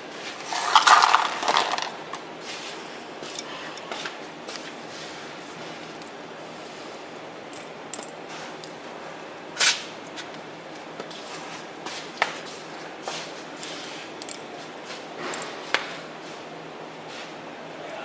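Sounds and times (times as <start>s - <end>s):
metal parts clicking and knocking: 0.5s - 2.0s, 3.2s - 3.9s, 7.5s - 8.8s, 14.2s - 14.5s.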